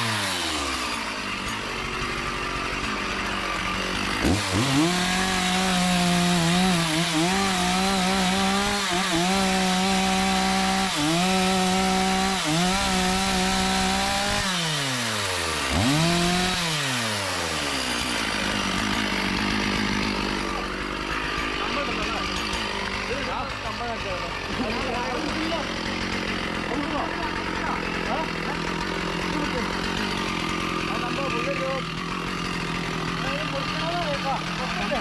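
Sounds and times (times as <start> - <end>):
chainsaw cutting wood: 0.0 - 35.0.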